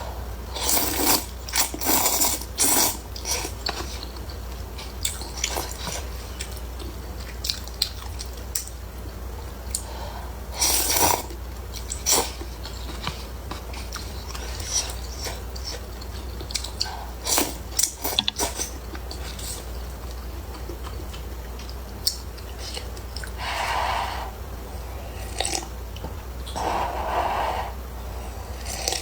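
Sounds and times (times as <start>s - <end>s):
steady low hum: 0.0s - 29.0s
person eating noodles: 0.5s - 4.2s, 10.6s - 19.7s
breathy sound: 26.6s - 28.4s.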